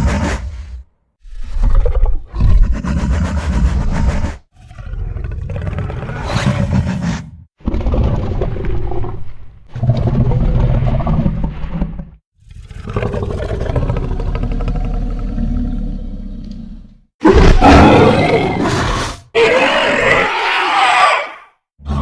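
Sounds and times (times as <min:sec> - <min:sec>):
monster roars: 0:17.2 - 0:22.0.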